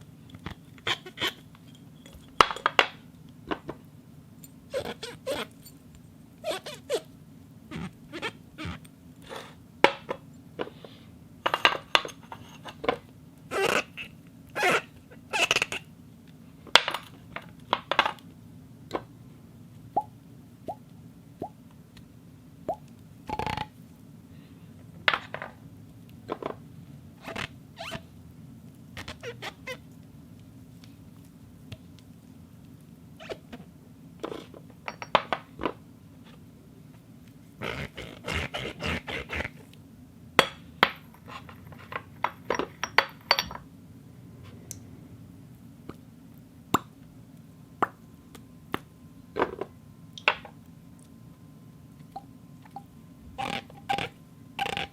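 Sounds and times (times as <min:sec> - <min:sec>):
glass squeaks: 0:04.7 - 0:05.6, 0:06.4 - 0:07.1, 0:07.7 - 0:08.8, 0:13.5 - 0:15.8, 0:53.4 - 0:54.9
glass clinking: 0:42.5 - 0:43.6.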